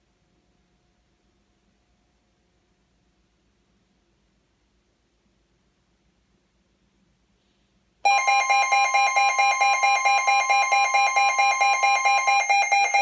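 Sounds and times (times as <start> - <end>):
steady alert tone: 8.1 - 13.0.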